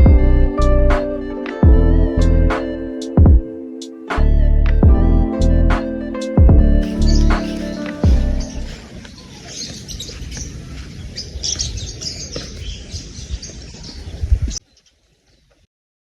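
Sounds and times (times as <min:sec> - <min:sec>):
steady low rumble: 0:00.0 - 0:00.9, 0:01.6 - 0:02.5, 0:04.2 - 0:05.7, 0:06.4 - 0:08.9
birds chirping: 0:04.8 - 0:15.6.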